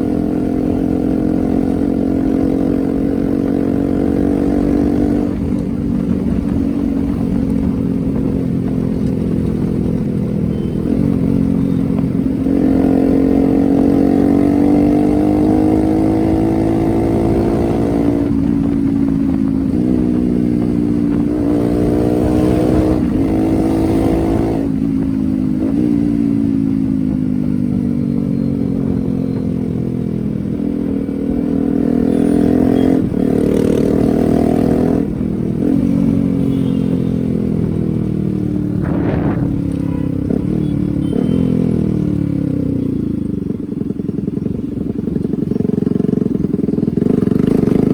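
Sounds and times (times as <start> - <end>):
motorcycle engine accelerating: 0.0 - 47.9.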